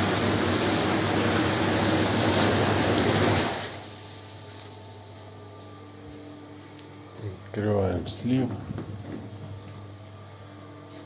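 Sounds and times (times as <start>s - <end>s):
whirlpool jets churning water: 0.0s - 4.3s
pump hum: 0.0s - 6.4s.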